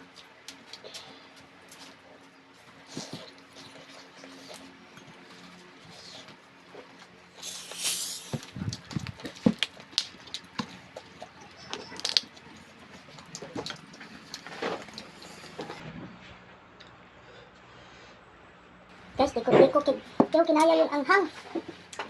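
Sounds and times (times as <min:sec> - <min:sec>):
chewing smacks: 0:08.6 - 0:15.7.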